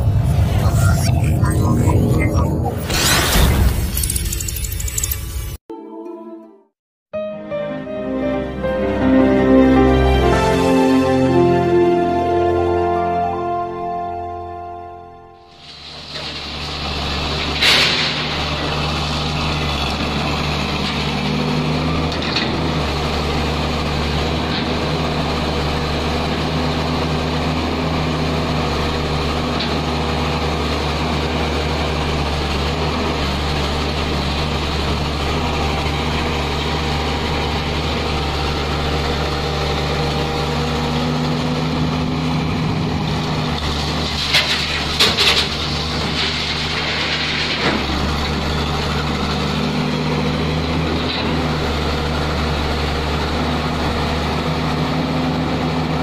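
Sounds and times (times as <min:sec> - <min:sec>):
excavator diesel engine running: 0:00.0 - 0:02.8, 0:15.6 - 0:56.0.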